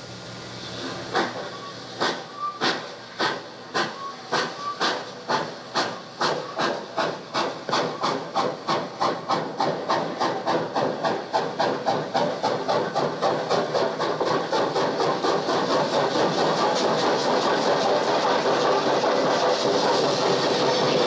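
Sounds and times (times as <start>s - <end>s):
steady steam hiss: 0.0s - 21.0s
steam locomotive exhaust chuffs: 0.0s - 21.0s.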